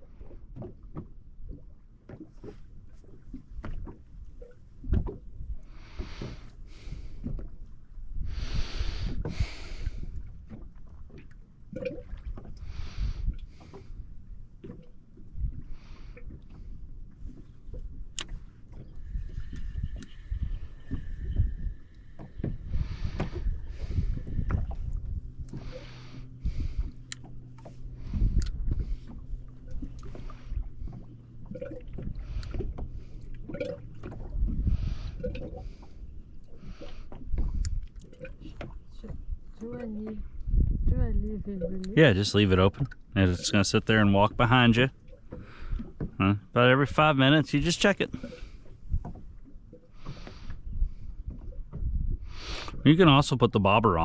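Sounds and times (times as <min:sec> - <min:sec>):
low steady hum: 0:00.0 - 0:54.0
water splashing against boat hull: 0:00.0 - 0:54.0
low rumble: 0:17.8 - 0:44.9.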